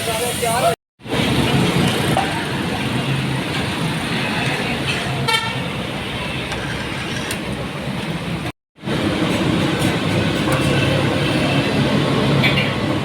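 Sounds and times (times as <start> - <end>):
vehicle horn toot: 5.3 - 5.7.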